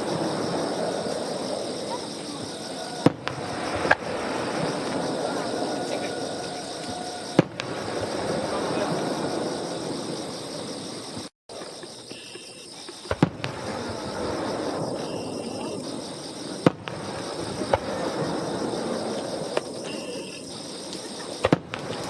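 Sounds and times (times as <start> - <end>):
fireworks bangs: 0.0 - 22.0.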